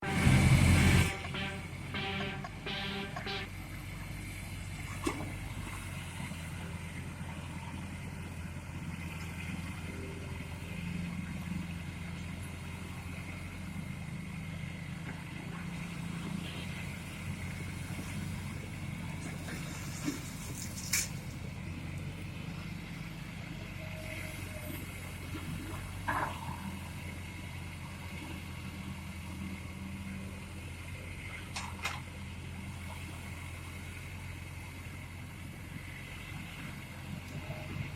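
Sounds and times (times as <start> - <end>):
diesel engine humming: 0.0 - 37.9.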